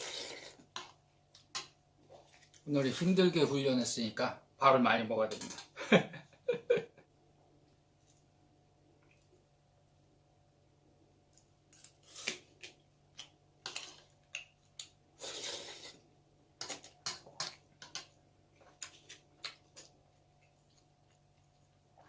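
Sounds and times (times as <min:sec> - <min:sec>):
chewing: 0:16.6 - 0:22.0.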